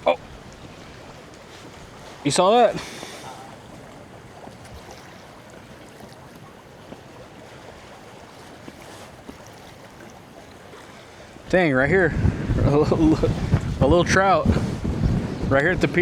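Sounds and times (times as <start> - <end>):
water washing: 0.0 - 6.4, 11.4 - 16.0
wind noise: 11.5 - 16.0.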